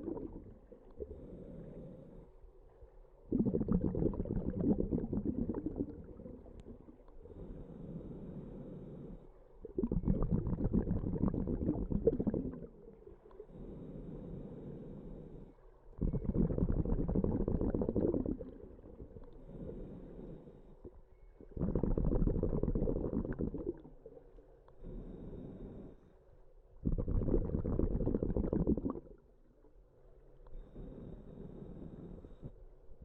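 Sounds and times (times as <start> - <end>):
bubbling regulator exhalations: 0.0 - 1.3, 3.3 - 7.1, 9.6 - 13.4, 16.0 - 20.0, 20.8 - 24.3, 26.8 - 29.3.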